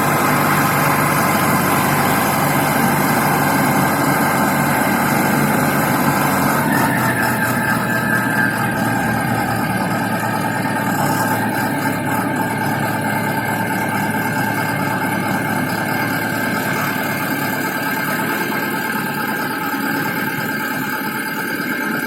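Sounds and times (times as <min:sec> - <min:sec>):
diesel engine running: 0:00.0 - 0:22.0
high-pitched whine: 0:00.0 - 0:22.0.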